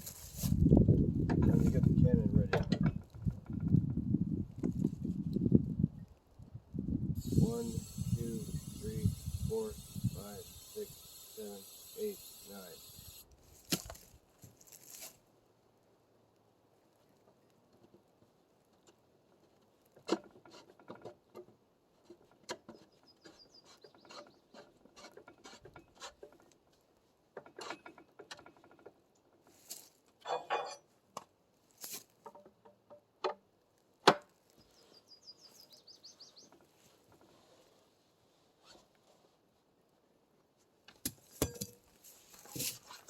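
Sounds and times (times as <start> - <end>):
short ratcheting rattle: 7.2 - 13.3
clicks knocks and scrapes: 18.8 - 26.6.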